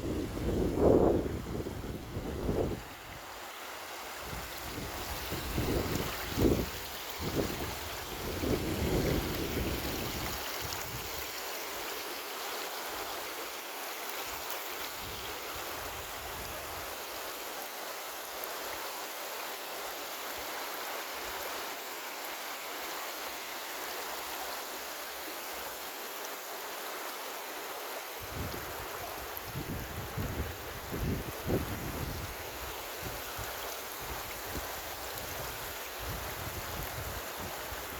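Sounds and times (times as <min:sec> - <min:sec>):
wind buffeting microphone: 0:00.0 - 0:02.9, 0:04.3 - 0:11.2, 0:29.5 - 0:32.4
stream water rushing: 0:00.0 - 0:37.9.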